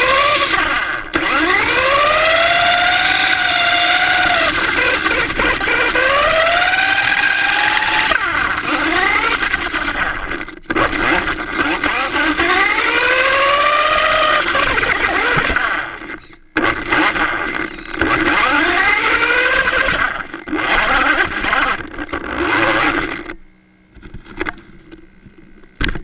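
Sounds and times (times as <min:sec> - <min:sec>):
electric motor whining: 0:00.0 - 0:26.0
faint steady hum: 0:02.0 - 0:26.0
clicks: 0:06.6 - 0:26.0.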